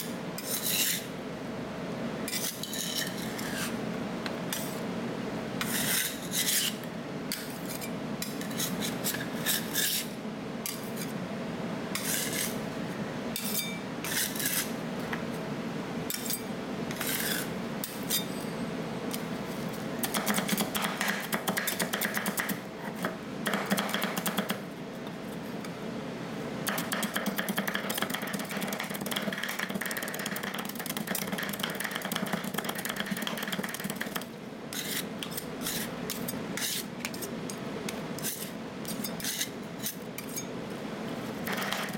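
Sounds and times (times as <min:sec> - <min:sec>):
metal spatulas scraping steel plate: 0:00.4 - 0:01.1, 0:02.3 - 0:03.8, 0:05.6 - 0:10.1, 0:11.9 - 0:12.6, 0:13.4 - 0:14.7, 0:16.1 - 0:18.5, 0:34.7 - 0:37.3, 0:38.2 - 0:40.5.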